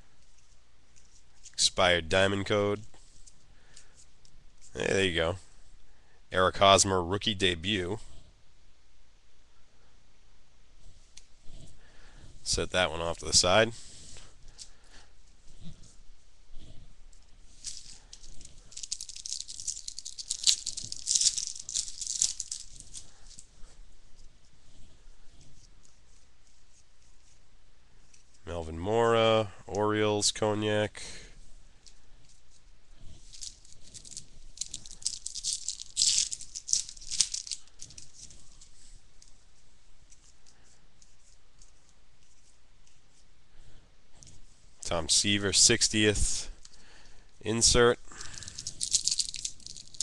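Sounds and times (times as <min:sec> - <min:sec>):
plastic wrapper crinkling and tearing: 0:17.5 - 0:24.3, 0:31.8 - 0:39.3, 0:48.1 - 0:50.0.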